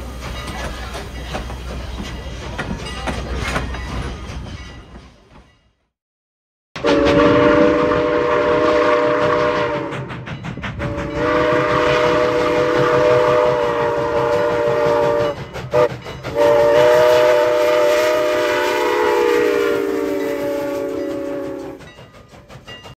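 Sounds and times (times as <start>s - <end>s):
train running rumble: 0.0s - 5.8s, 6.8s - 23.0s
steam locomotive whistle blasts: 6.8s - 10.2s, 10.8s - 22.0s.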